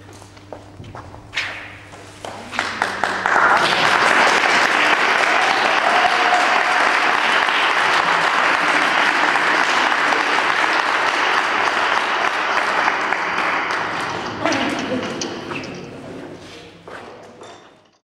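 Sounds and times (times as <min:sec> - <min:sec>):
audience applauding: 0:02.4 - 0:15.5.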